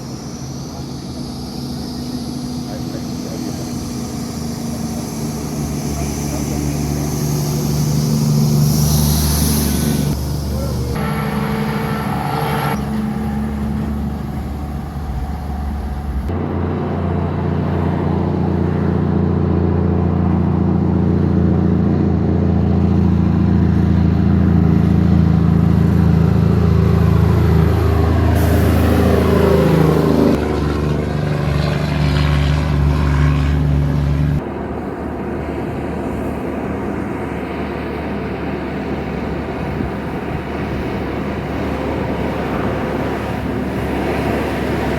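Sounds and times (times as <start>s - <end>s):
vehicle passing close by: 0.0s - 22.0s, 22.6s - 34.5s
truck and car engines: 0.0s - 44.9s.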